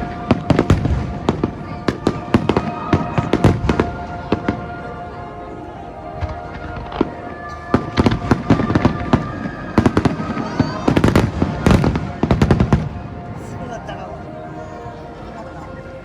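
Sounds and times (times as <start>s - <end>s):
fireworks exploding: 0.0s - 4.8s, 6.1s - 13.4s
music playing: 0.0s - 16.0s.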